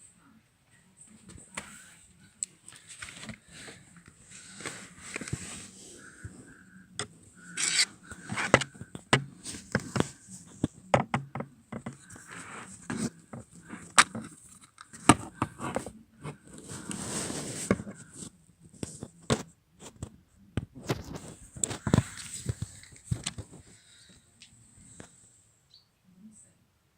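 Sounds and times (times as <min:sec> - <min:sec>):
rustling: 0:02.6 - 0:10.9, 0:11.9 - 0:19.1
plastic housing clicks and knocks: 0:07.0 - 0:12.0.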